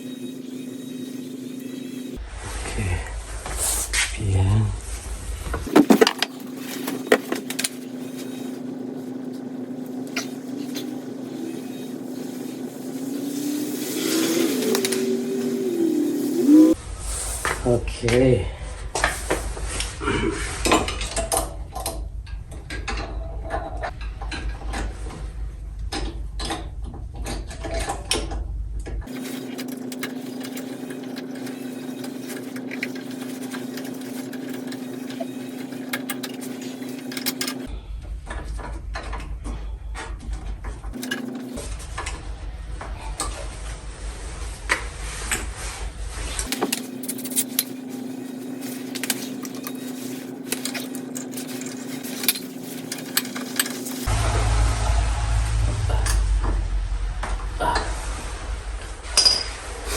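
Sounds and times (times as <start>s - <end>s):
steady low hum: 41.6s - 59.9s.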